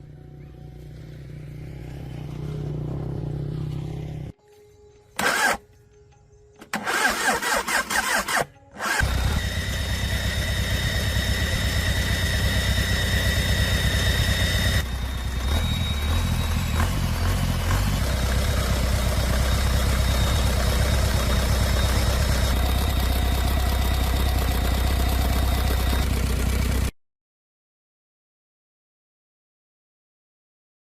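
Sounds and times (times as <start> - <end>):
diesel engine running: 0.0 - 4.3, 6.8 - 26.9
diesel engine cranking: 5.2 - 5.7, 6.6 - 26.9.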